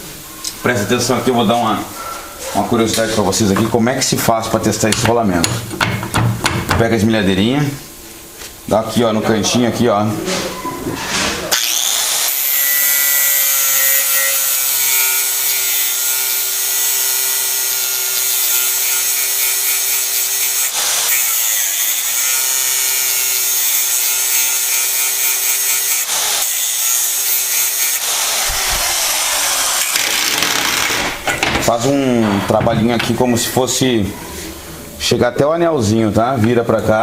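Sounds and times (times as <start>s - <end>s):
angle grinder cutting steel: 11.5s - 31.1s.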